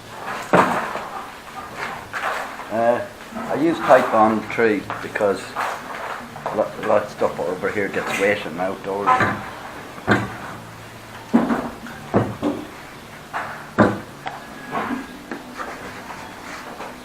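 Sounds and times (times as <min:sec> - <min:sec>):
wood knocking against wood: 0:08.2 - 0:10.6, 0:11.2 - 0:16.1.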